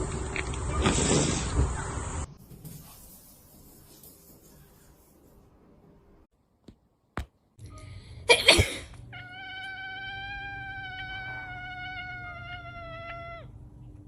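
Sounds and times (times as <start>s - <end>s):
cat yowling: 9.1s - 13.5s.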